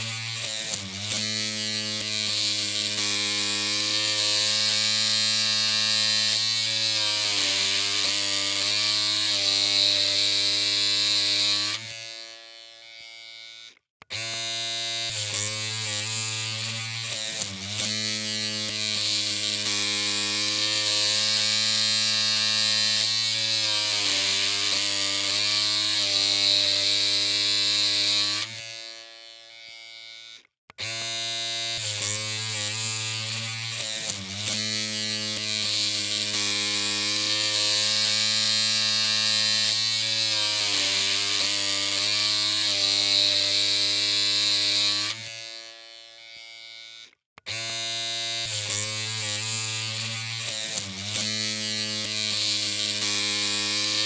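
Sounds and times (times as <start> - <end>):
electric hair clippers buzzing: 0.0 - 54.0.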